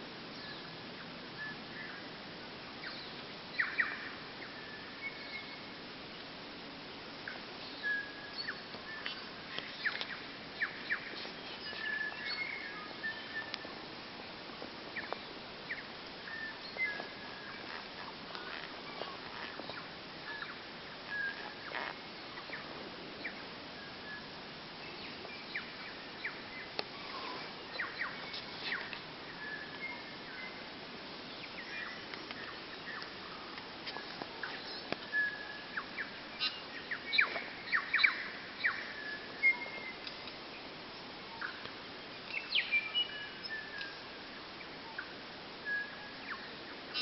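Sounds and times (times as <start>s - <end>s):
faint steady hiss: 0.0s - 47.0s
bird singing whistled notes: 2.8s - 5.7s, 7.6s - 13.7s, 15.0s - 17.7s, 18.8s - 21.7s, 22.5s - 30.6s, 34.5s - 40.0s, 42.3s - 44.0s, 45.6s - 47.0s.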